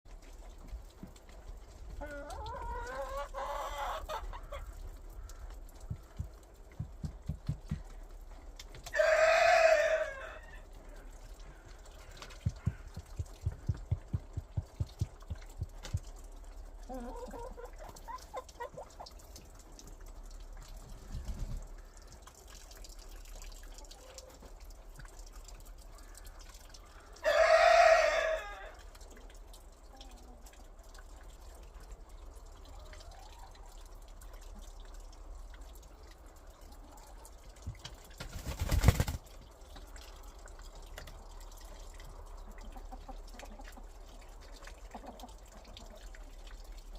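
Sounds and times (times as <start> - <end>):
barnyard background: 0.1 - 46.9
chicken calling: 8.9 - 10.7, 27.2 - 28.8.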